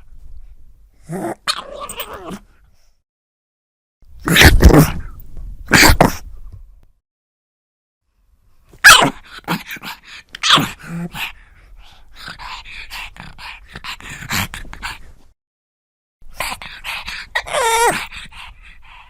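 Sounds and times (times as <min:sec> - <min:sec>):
dog snorting and grunting: 0:04.2 - 0:06.3, 0:08.8 - 0:11.4, 0:12.2 - 0:15.0, 0:16.3 - 0:18.5.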